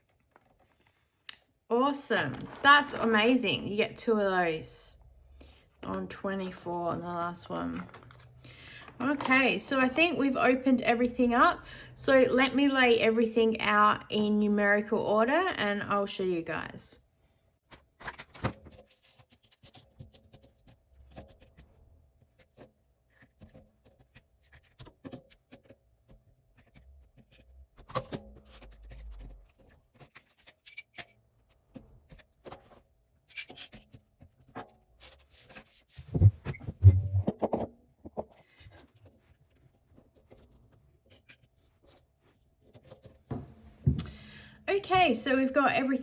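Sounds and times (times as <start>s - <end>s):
loud thumps: 36.1s - 37.6s.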